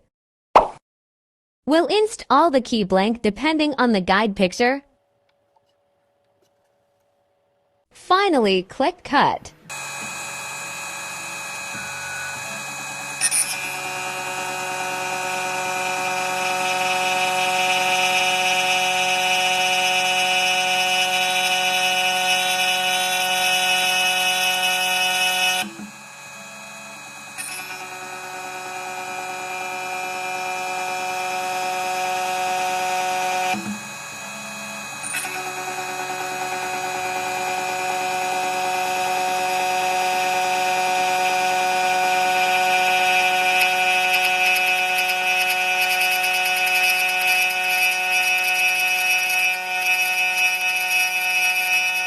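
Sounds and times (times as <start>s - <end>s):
key cutting machine whining: 9.6s - 52.0s.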